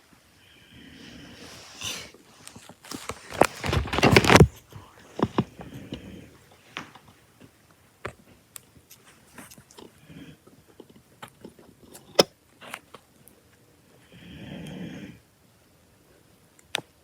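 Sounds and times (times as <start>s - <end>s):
dog snoring: 14.1s - 15.2s.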